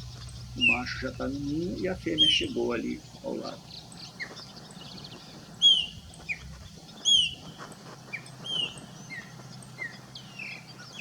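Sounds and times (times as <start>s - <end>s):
bird calling high notes: 0.6s - 4.4s.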